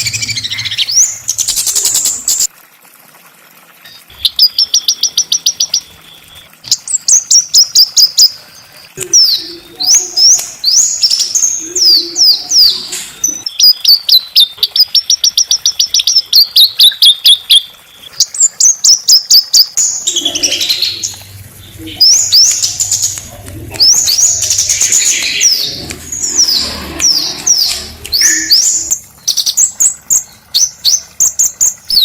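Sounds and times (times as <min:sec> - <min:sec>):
songbird singing: 0:09.0 - 0:32.0.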